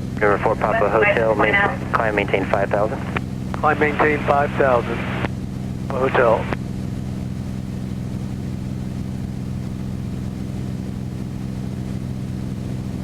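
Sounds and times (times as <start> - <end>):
propeller plane engine droning: 0.0 - 13.0.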